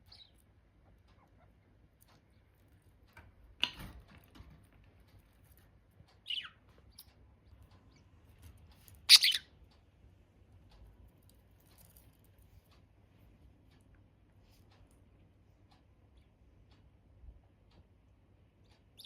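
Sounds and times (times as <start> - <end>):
budgerigar chirps: 0.0 - 0.4, 6.2 - 7.1, 9.1 - 9.5.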